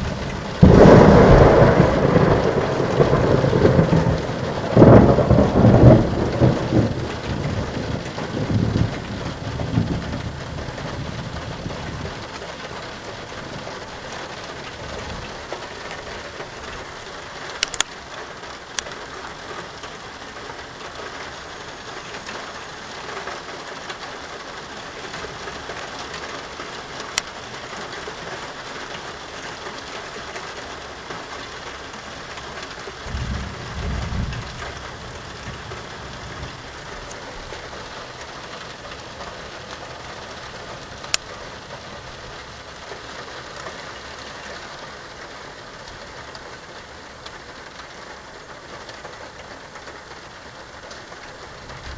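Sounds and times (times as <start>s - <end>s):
thunder rumbling: 0.0s - 17.2s, 32.3s - 43.4s
steady rain falling: 0.0s - 51.9s.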